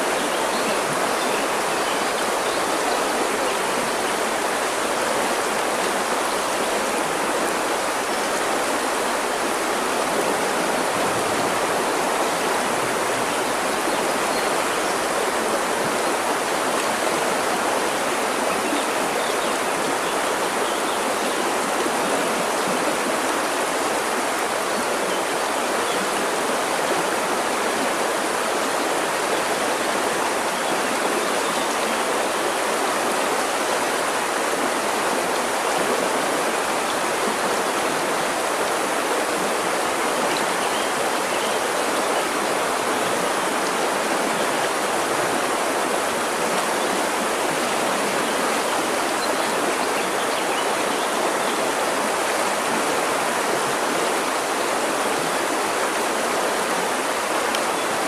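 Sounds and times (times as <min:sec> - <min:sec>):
river water flowing over rocks: 0:00.0 - 0:58.0.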